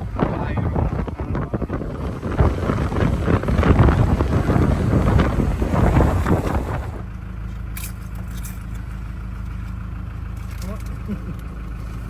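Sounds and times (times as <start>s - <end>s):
wind rumble on microphone: 0.0s - 7.1s
car cabin hum while driving: 0.0s - 12.0s.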